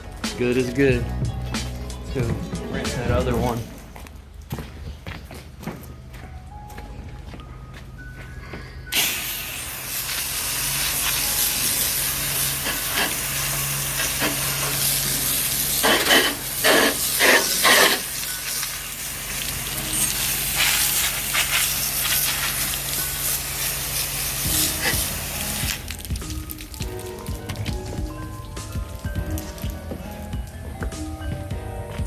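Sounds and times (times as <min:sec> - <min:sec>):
pressure washer water spray: 0:09.0 - 0:30.3.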